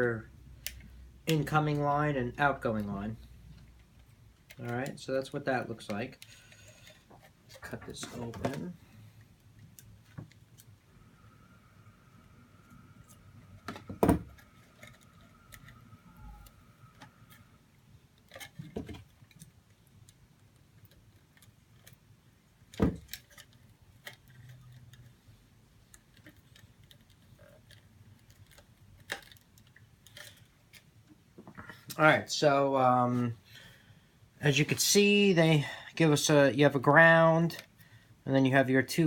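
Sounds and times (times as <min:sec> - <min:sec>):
faint high tone: 0:15.2 - 0:17.2.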